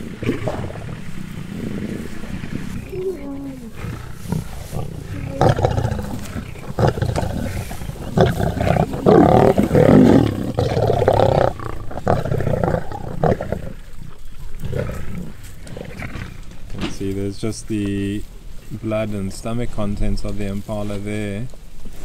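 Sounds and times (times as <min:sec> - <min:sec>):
lions growling and snarling: 0:00.0 - 0:16.9.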